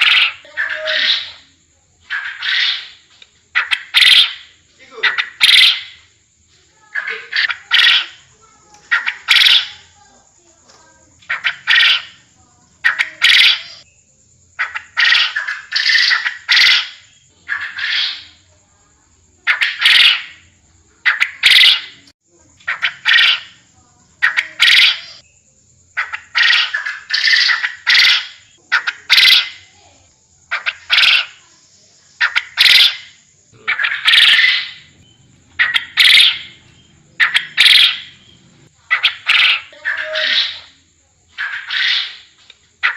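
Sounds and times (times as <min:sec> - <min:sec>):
quail calling: 0:00.0 - 0:06.1, 0:06.8 - 0:10.0, 0:11.2 - 0:13.9, 0:14.6 - 0:18.4, 0:19.4 - 0:23.6, 0:24.2 - 0:25.2, 0:26.0 - 0:29.8, 0:30.5 - 0:31.5, 0:32.2 - 0:42.9
faint high hiss: 0:29.6 - 0:35.6.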